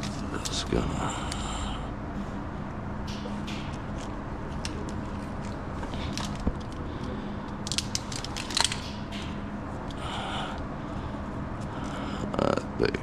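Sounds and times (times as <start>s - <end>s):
wires and tape crinkling: 0.0s - 1.4s, 3.8s - 9.3s.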